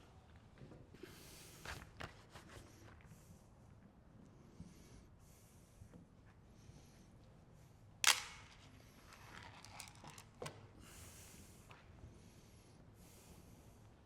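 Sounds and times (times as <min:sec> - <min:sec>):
plastic parts knocking: 0:08.0 - 0:08.5.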